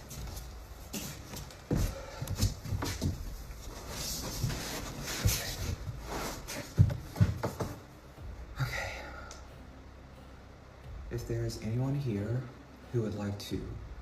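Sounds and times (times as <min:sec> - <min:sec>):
equipment handling knocks and rubs: 0:00.1 - 0:07.8.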